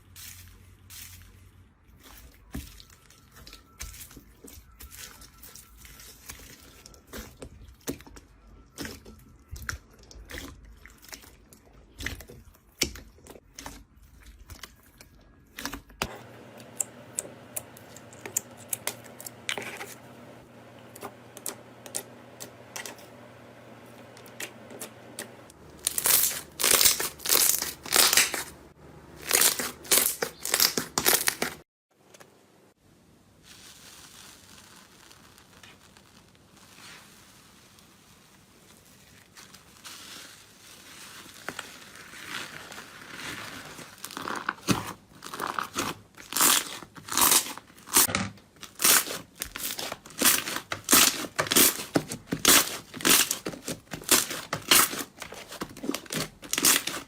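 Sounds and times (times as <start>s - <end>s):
loud crunchy crackling: 24.5s - 28.6s.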